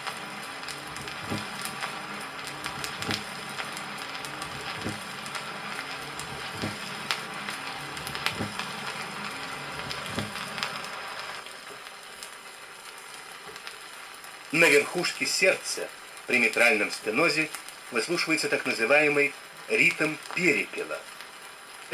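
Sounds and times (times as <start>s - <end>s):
vinyl crackle and hiss: 0.0s - 21.9s
heartbeat thuds: 1.0s - 1.6s, 2.8s - 3.3s, 4.4s - 5.1s, 6.3s - 6.9s, 8.0s - 8.7s, 9.8s - 10.5s.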